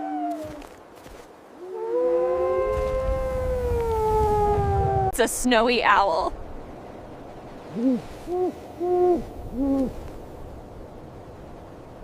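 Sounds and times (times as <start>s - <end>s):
owl hooting: 7.7s - 10.0s.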